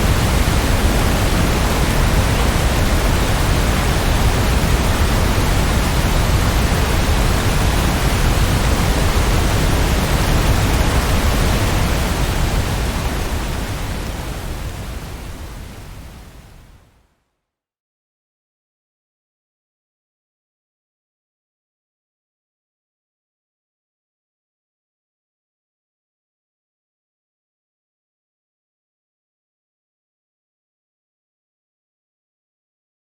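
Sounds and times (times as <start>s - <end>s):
steady rain hiss: 0.0s - 16.8s.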